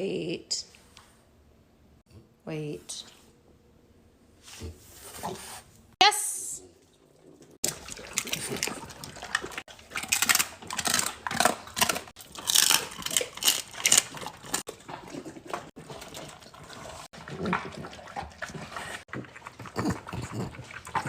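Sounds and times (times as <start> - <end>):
dogs chewing and licking food: 6.9 - 21.0.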